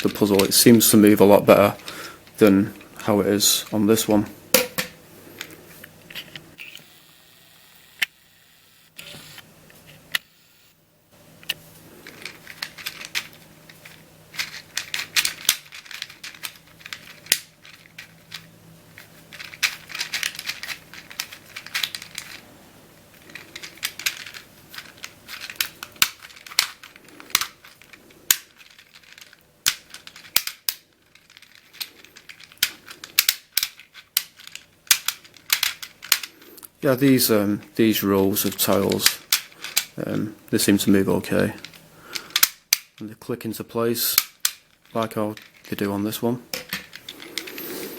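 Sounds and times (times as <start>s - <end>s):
puzzle tiles clicking and rattling: 12.1s - 22.4s, 23.2s - 36.3s, 38.4s - 40.1s, 44.2s - 47.9s.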